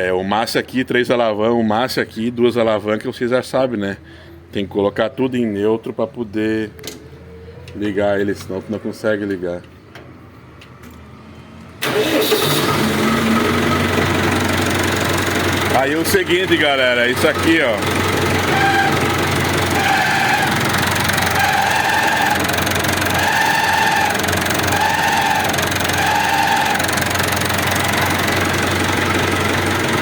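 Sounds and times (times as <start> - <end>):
clutch housing squealing: 11.8 - 14.4, 15.0 - 30.0
tractor diesel engine starting: 11.8 - 30.0.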